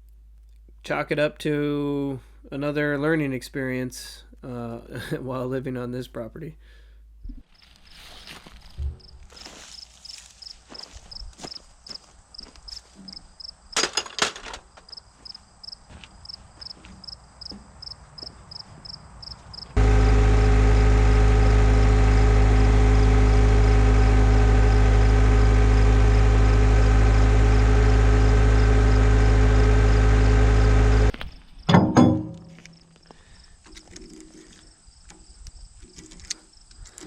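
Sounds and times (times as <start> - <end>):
insects chirping: 7.2 - 13.9, 14.6 - 19.8, 31.1 - 31.7, 32.4 - 37.0
loud steady engine drone: 19.8 - 31.1
knocks: 31.7 - 32.6.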